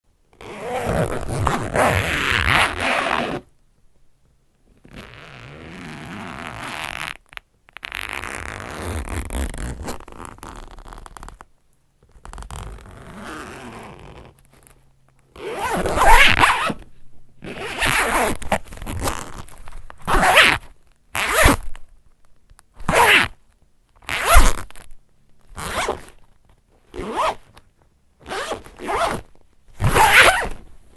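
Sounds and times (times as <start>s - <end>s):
zipper being zipped: 0.4s - 3.5s, 4.8s - 7.2s, 7.8s - 11.4s, 12.2s - 14.4s, 15.4s - 16.8s, 17.4s - 21.8s, 22.8s - 23.4s, 24.0s - 24.8s, 25.5s - 26.2s, 26.9s - 27.5s, 28.2s - 30.6s.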